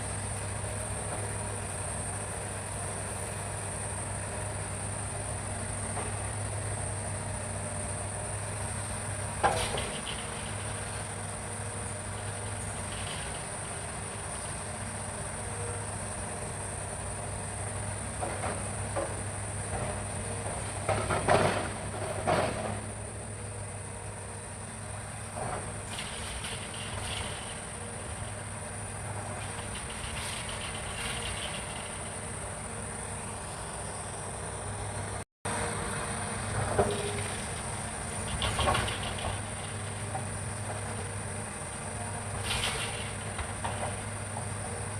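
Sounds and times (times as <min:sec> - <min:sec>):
excavator diesel engine running: 0:00.0 - 0:44.9
forest insects droning: 0:00.0 - 0:44.9
knocks and clanks: 0:09.3 - 0:11.5, 0:18.2 - 0:22.8, 0:29.4 - 0:32.3, 0:36.5 - 0:41.2, 0:42.2 - 0:44.8.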